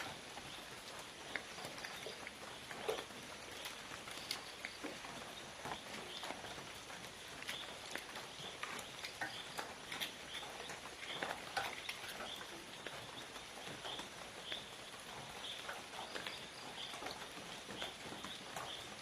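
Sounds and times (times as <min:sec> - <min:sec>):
sharp clicks and crackles: 0:01.2 - 0:14.1.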